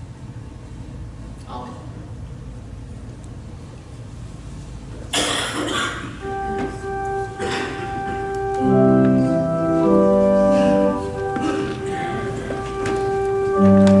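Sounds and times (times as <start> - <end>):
organ playing slow chords: 5.7 - 14.0.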